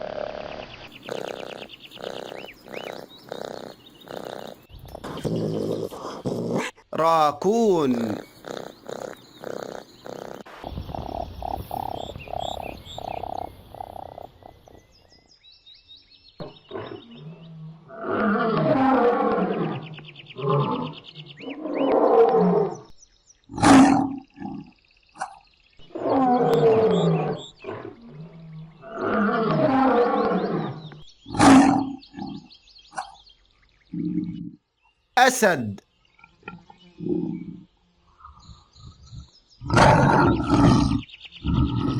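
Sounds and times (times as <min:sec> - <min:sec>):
lion roaring: 0:00.9 - 0:14.1, 0:39.6 - 0:41.9.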